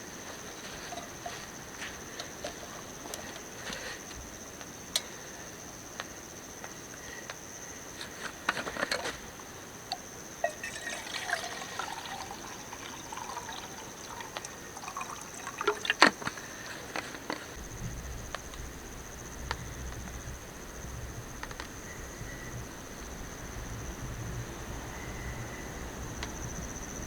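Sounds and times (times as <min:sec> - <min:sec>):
liquid trickling: 0:09.9 - 0:17.6.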